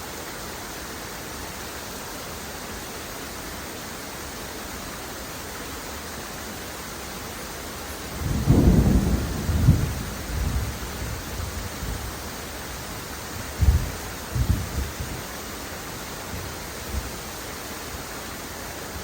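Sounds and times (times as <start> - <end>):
rushing water: 0.0 - 19.0
thunder rumbling: 8.1 - 12.3.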